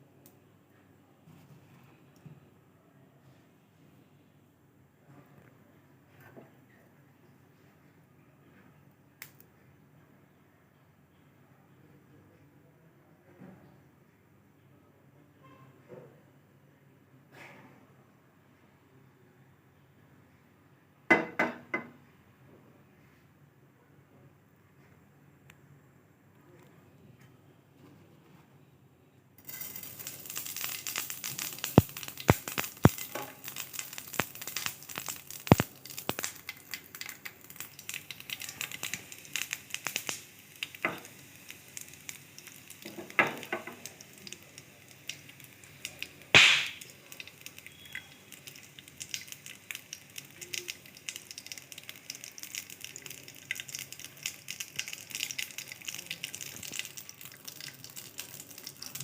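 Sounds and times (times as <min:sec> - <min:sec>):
omelette sizzling in a pan: 0:29.4 - 0:59.0.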